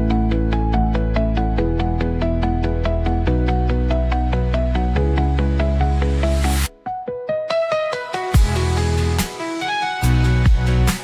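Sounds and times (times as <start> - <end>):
bass-heavy electronic beat: 8.4 - 11.0.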